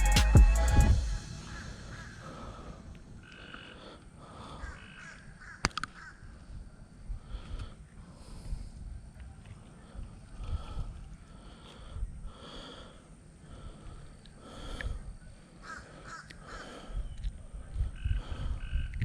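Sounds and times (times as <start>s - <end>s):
birds calling: 1.2s - 6.4s.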